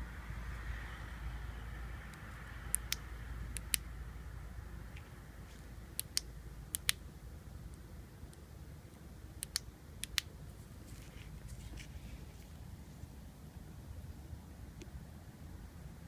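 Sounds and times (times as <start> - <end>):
steady low hum: 0.0 - 16.0
sharp clicks in pairs: 9.4 - 10.3.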